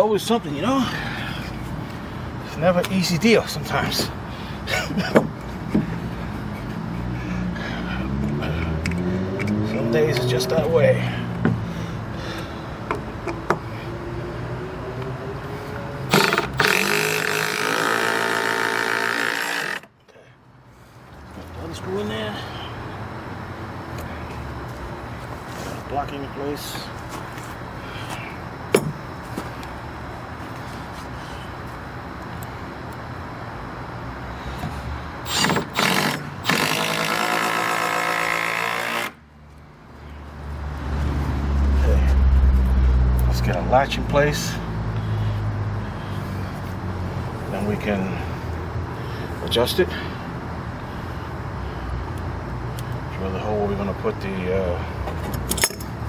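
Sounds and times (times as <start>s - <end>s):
power tool motor running: 16.1s - 19.9s, 35.3s - 39.2s.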